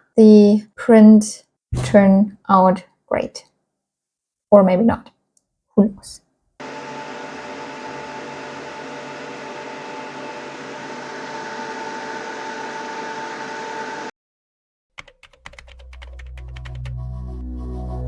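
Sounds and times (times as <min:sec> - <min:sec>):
machine hum with high whine: 0:06.6 - 0:14.1
electronic music: 0:16.1 - 0:18.0.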